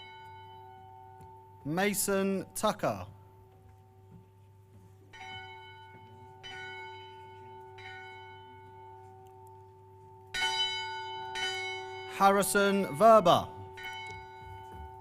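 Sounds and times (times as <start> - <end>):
hand bell ringing: 13.6 - 15.0.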